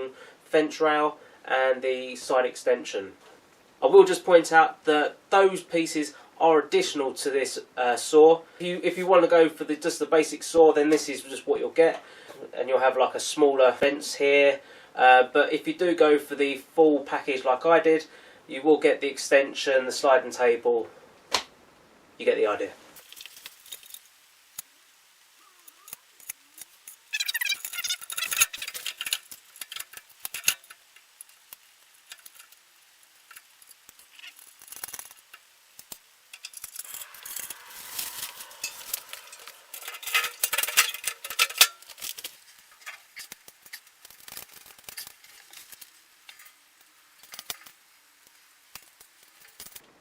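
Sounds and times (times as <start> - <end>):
metal parts clinking and rattling: 26.8 - 30.8, 36.3 - 46.6, 48.8 - 49.8.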